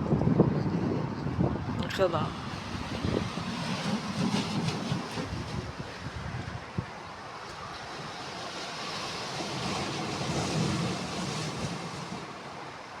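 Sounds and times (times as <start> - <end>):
sea waves washing onto shore: 1.6 - 13.0.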